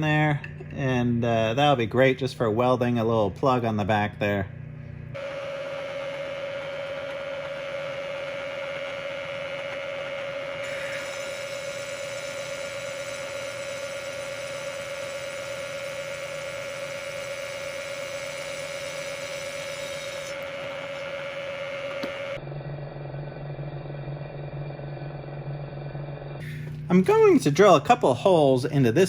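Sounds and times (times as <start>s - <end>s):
milling machine whine and hum: 5.2s - 23.1s.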